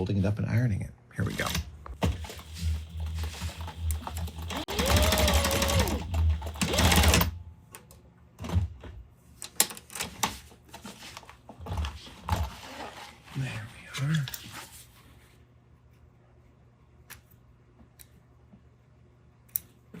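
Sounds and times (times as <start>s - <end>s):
sewing machine motor whine: 2.0s - 7.4s.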